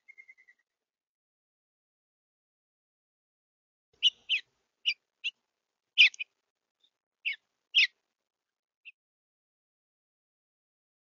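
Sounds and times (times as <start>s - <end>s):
small bird chirping: 0.0s - 0.6s, 4.0s - 5.4s, 6.0s - 8.0s.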